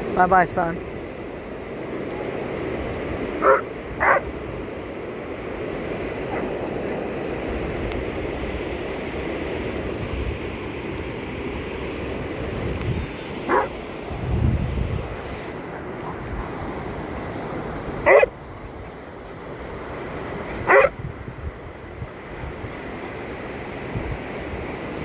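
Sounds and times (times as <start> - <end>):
ocean surf: 0.0 - 25.0
wind: 0.0 - 25.0
dog yelping: 3.4 - 4.2, 13.5 - 13.7, 20.7 - 20.9.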